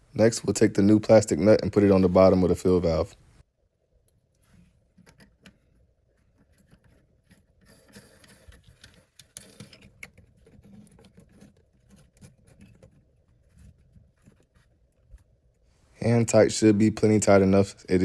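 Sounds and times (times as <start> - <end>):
plastic nut clicking and scraping: 4.1 - 15.6.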